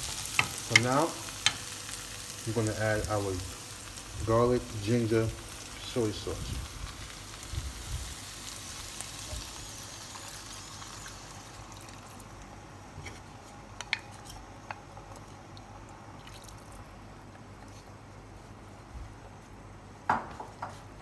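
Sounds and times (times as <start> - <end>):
vegetables sizzling in a pan: 0.0 - 13.2.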